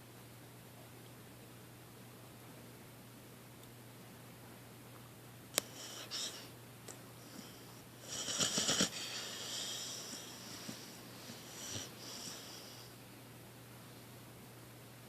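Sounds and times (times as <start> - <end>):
dog snoring: 5.6 - 6.5, 7.2 - 13.0
long hissing breath: 7.2 - 13.0.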